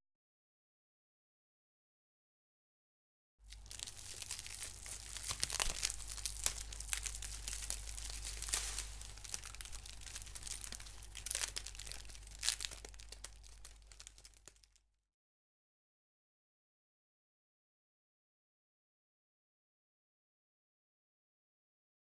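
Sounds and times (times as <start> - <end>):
low steady hum: 3.4 - 14.7
magnetic tape rustling: 3.5 - 14.6
wicker creaking: 3.5 - 14.7.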